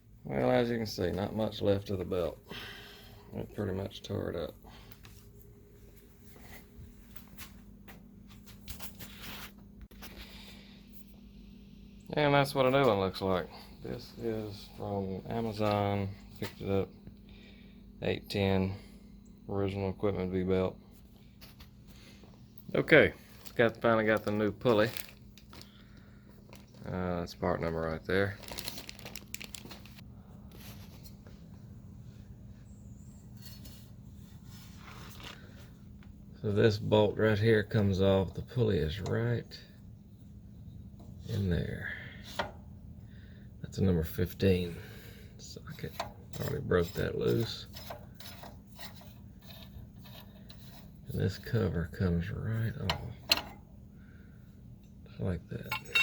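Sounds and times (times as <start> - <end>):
low hum: 0.0 - 26.9
steady low hum: 0.0 - 56.0
rustling and handling noises: 3.3 - 11.0, 20.9 - 36.3, 55.6 - 56.0
faint rustles: 28.3 - 36.1.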